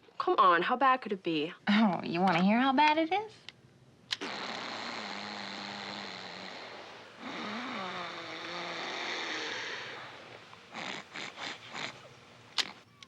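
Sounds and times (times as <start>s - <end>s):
loud snoring: 4.2s - 12.8s
short snorts: 4.2s - 12.8s.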